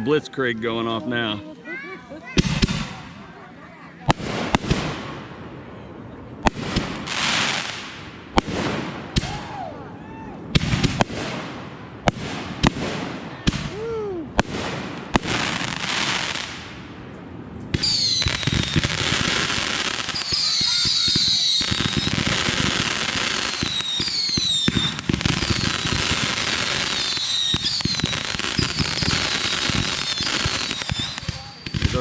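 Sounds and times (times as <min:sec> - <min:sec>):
firework crackling: 0:02.2 - 0:03.2, 0:04.1 - 0:05.4, 0:06.4 - 0:09.6, 0:10.5 - 0:16.9, 0:17.7 - 0:32.0
firework bangs: 0:02.3 - 0:03.2, 0:04.1 - 0:05.5, 0:06.4 - 0:09.6, 0:10.5 - 0:17.0, 0:17.7 - 0:32.0
falling firework whistles: 0:17.8 - 0:32.0.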